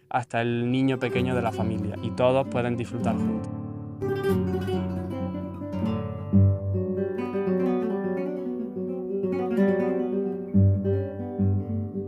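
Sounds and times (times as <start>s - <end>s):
flamenco acoustic guitar: 0.6s - 12.0s.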